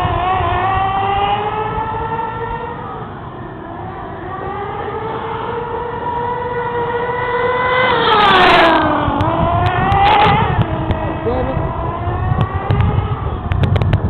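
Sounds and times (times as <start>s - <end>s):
model car engine whining: 0.0s - 13.5s.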